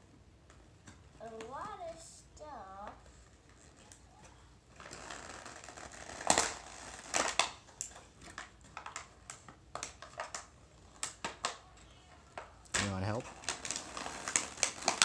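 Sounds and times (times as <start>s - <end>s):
plastic packaging crinkling and crackling: 3.0s - 15.0s.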